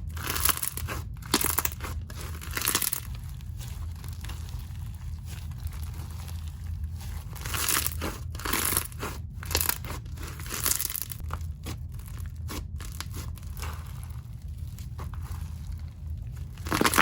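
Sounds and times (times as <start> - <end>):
crunchy slime squeezed by hand: 16.4 - 17.0.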